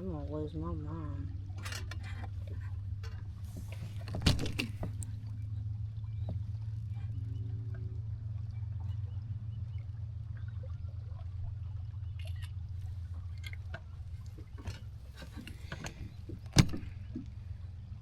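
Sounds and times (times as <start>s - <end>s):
steady low rumble: 0.0s - 18.0s
gear clicks and knocks: 1.6s - 5.2s, 13.4s - 17.4s.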